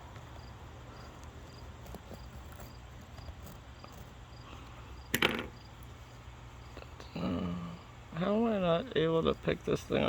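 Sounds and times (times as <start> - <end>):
cricket chirping: 0.3 - 6.8.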